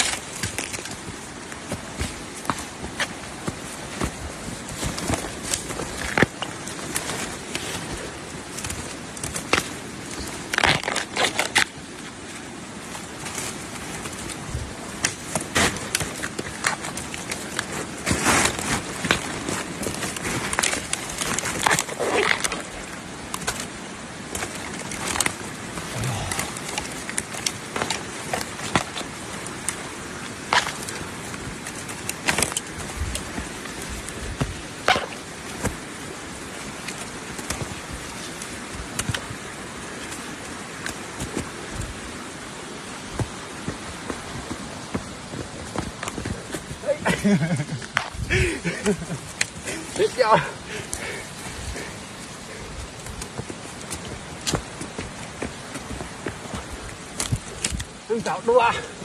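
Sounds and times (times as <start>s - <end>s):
sharp knocks and crackles: 0.0s - 11.8s, 13.2s - 23.7s, 24.3s - 29.8s, 30.4s - 36.0s, 43.1s - 46.8s, 53.0s - 58.1s
dry leaves and twigs crunching: 0.0s - 58.2s
steady outdoor hiss: 0.0s - 59.0s.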